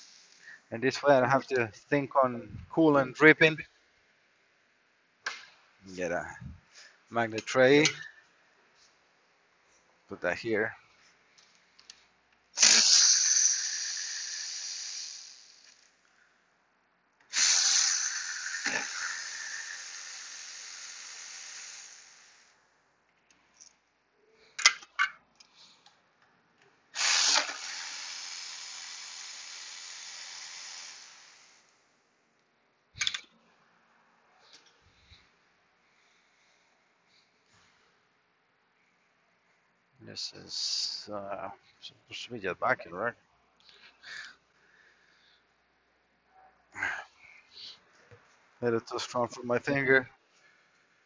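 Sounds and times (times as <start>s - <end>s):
power ratchet hissing: 0.0s - 0.6s, 12.6s - 15.9s, 17.3s - 22.6s, 27.0s - 31.8s, 33.0s - 33.2s
ratchet clicks: 12.6s - 15.9s, 17.4s - 22.0s, 27.1s - 28.8s, 33.0s - 33.3s.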